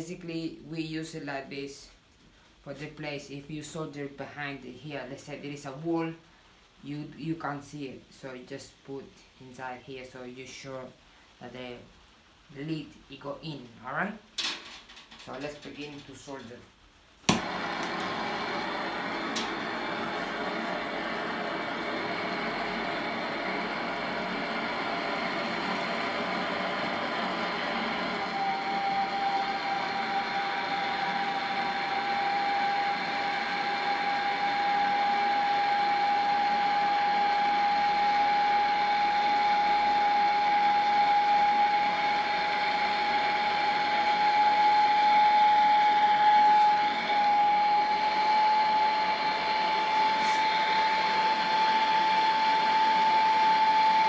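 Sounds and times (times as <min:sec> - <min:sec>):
blowtorch flame hissing: 0:17.2 - 0:53.8.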